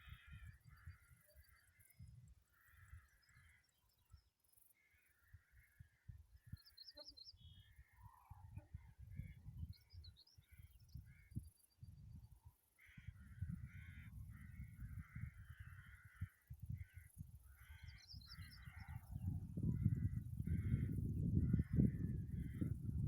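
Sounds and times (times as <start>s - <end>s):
harsh caw-like bird calls: 0.0s - 3.8s, 12.8s - 19.1s, 19.7s - 22.7s
wind gusting on microphone: 13.0s - 23.0s.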